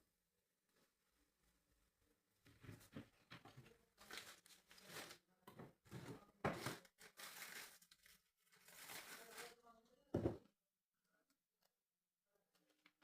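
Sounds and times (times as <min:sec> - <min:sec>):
rustling and crinkling handling: 0:02.4 - 0:09.8.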